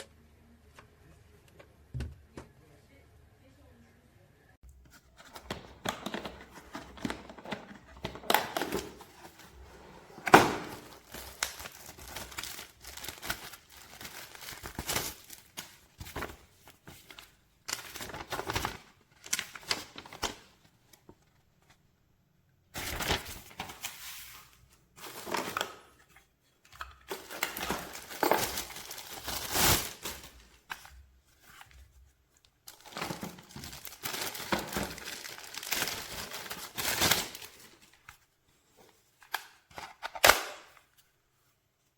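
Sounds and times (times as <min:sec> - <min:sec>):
plastic wrapping crinkling: 0:05.3 - 0:20.5, 0:27.0 - 0:31.6, 0:32.6 - 0:38.1.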